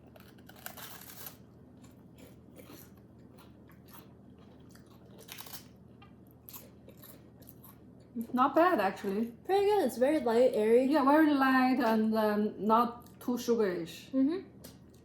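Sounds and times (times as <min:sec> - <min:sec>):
wafer cookie crunching: 0:00.0 - 0:09.3.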